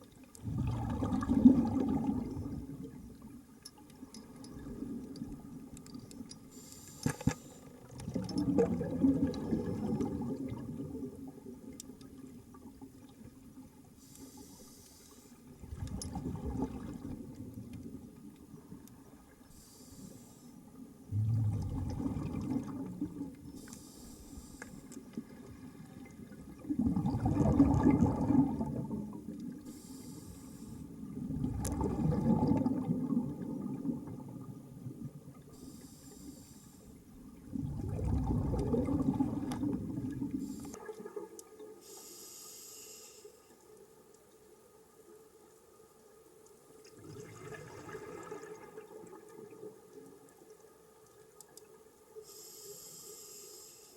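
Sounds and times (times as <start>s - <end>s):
exhaust bubbles rumbling: 0.4s - 2.8s, 8.1s - 11.2s, 21.1s - 23.4s, 26.3s - 29.2s, 31.1s - 35.2s, 37.5s - 40.4s.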